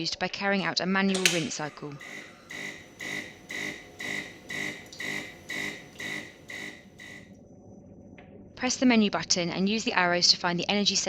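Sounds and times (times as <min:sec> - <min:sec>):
coffee machine pump buzzing: 0:01.2 - 0:07.3.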